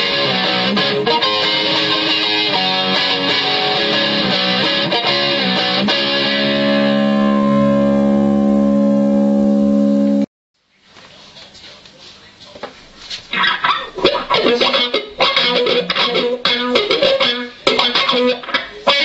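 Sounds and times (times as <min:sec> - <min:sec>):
distorted electric guitar: 0:00.0 - 0:10.3, 0:13.4 - 0:19.0.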